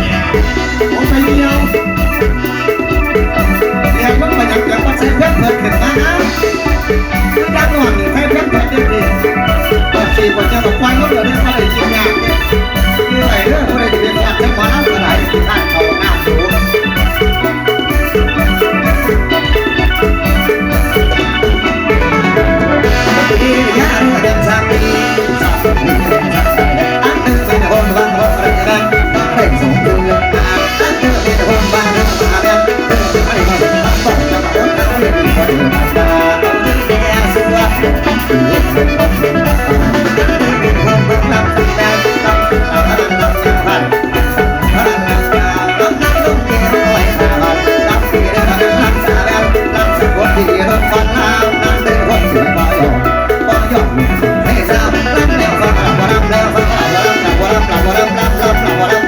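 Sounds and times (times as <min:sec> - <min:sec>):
drum kit beat: 0:00.0 - 0:59.0
live band music: 0:00.0 - 0:59.0.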